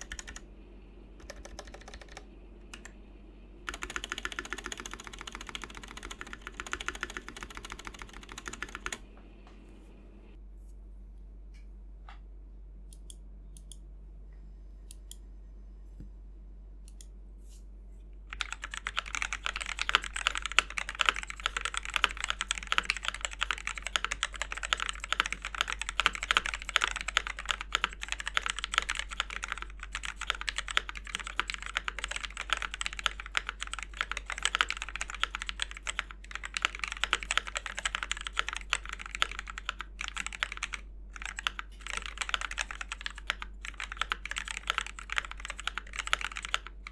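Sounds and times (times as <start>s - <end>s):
mechanical keyboard typing: 0.0s - 0.4s, 1.2s - 3.0s, 3.7s - 9.0s, 18.3s - 46.9s.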